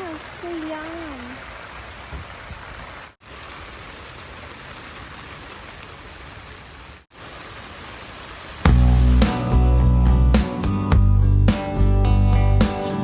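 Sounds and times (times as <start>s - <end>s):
steady rain falling: 0.0s - 9.5s.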